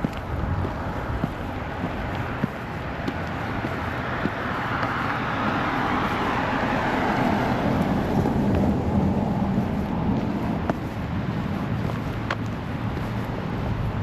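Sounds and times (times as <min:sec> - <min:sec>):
vehicle driving past: 0:01.7 - 0:10.7.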